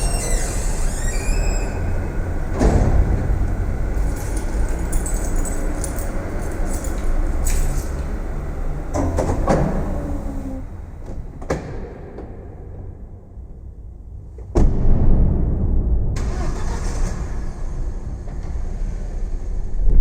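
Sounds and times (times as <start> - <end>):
faint high squeaks: 0.0 - 2.2
cars rumbling echoing off concrete: 0.0 - 14.6, 16.9 - 20.0
heavy thump: 2.4 - 4.4.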